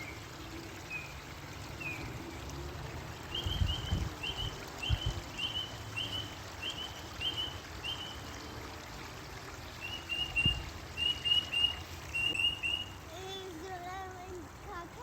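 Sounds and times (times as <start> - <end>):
water washing: 0.0 - 15.0
bird chirping: 3.3 - 8.2, 9.8 - 13.0.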